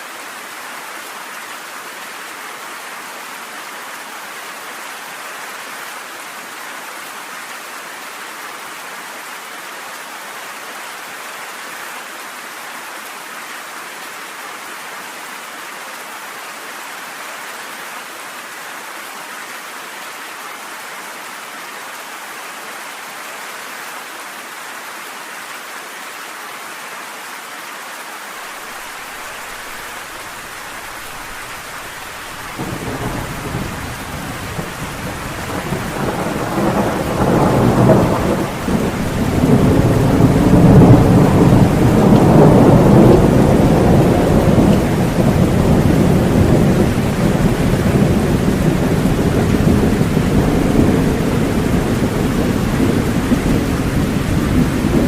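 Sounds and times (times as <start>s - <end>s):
steady rain hiss: 0.0s - 55.0s
rolling thunder rumble: 31.2s - 55.0s.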